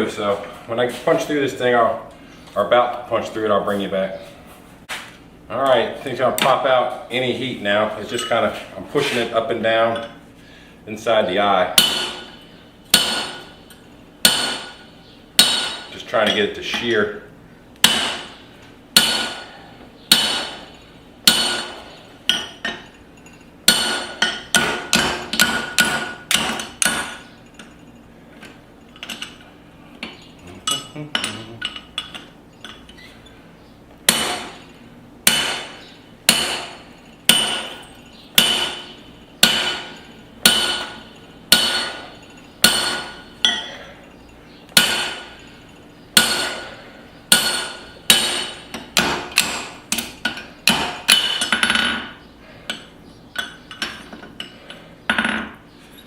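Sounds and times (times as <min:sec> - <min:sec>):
hammer striking punch on anvil: 0:11.8 - 0:13.6, 0:14.2 - 0:14.8, 0:15.4 - 0:16.0, 0:17.8 - 0:18.4, 0:19.0 - 0:19.5, 0:20.1 - 0:22.8, 0:23.7 - 0:27.3, 0:34.1 - 0:34.6, 0:35.2 - 0:43.7, 0:44.8 - 0:45.4, 0:46.2 - 0:46.7, 0:47.3 - 0:52.2.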